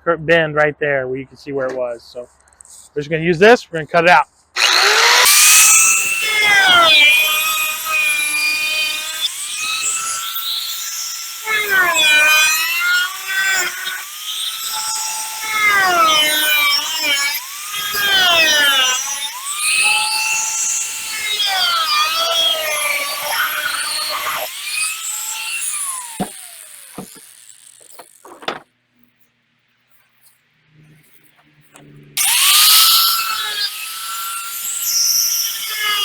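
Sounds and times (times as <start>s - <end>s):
power tool cutting plastic: 4.6s - 28.7s, 32.2s - 36.0s.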